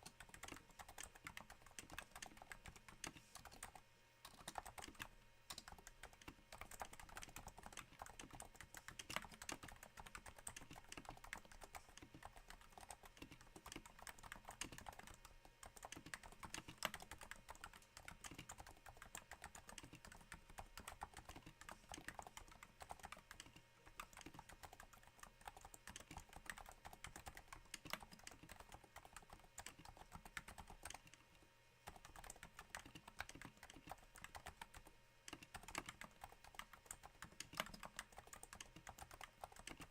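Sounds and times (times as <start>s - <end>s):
soft keyboard typing: 0.0s - 39.9s.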